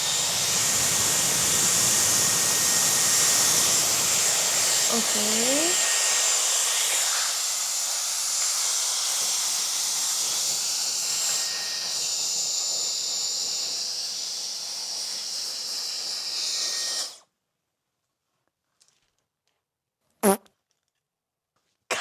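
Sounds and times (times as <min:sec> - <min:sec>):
high-pitched motor whine: 0:00.0 - 0:06.3
hair styler blowing air: 0:00.0 - 0:17.2.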